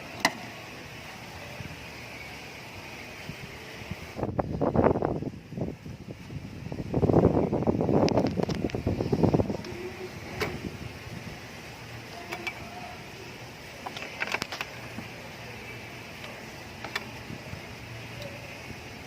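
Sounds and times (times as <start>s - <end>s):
faint steady hum: 0.0s - 19.0s
clicks and knocks of parts handled: 13.8s - 15.1s, 16.2s - 17.2s.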